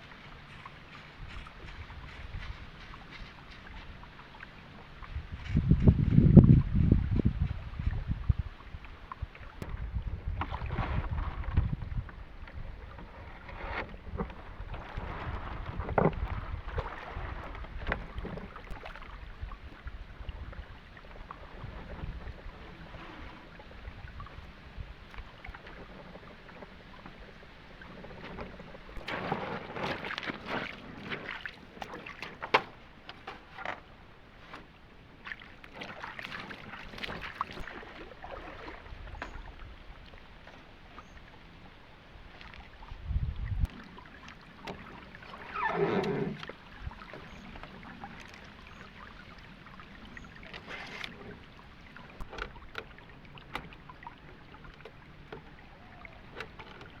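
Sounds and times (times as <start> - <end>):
wind rumble on microphone: 0.0 - 31.4, 42.2 - 43.8
water splashing and sloshing: 0.0 - 57.0.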